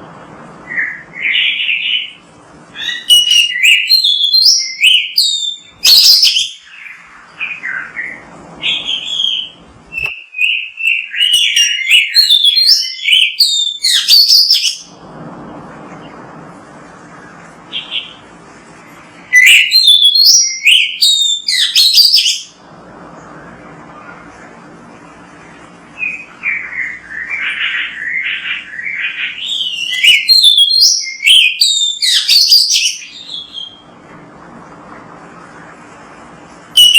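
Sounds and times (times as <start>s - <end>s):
bird singing whistles and chatter: 2.8s - 14.9s, 19.3s - 22.6s, 26.0s - 33.8s.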